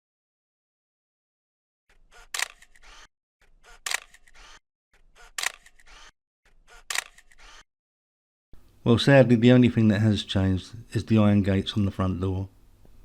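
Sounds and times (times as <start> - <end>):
camera shutter clicks: 2.2 - 3.1, 3.8 - 4.6, 5.3 - 6.1, 6.7 - 7.6.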